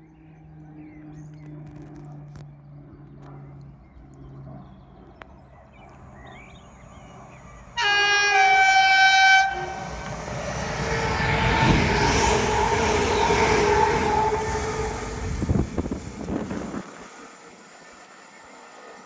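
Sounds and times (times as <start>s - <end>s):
train rumbling: 6.0s - 19.0s
train horn blast: 7.8s - 15.8s.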